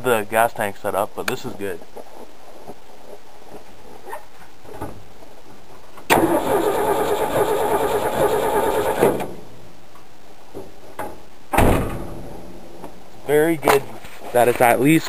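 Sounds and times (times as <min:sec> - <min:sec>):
starter motor cranking engine: 0:06.1 - 0:09.2.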